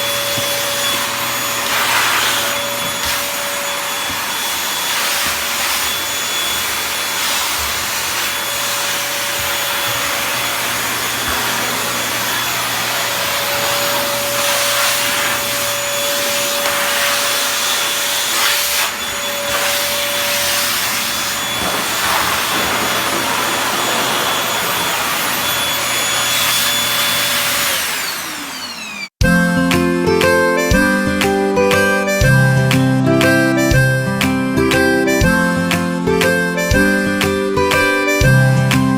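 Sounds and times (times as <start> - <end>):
vacuum motor winding down: 0.0 - 29.2
vacuum cleaner running: 0.0 - 38.8.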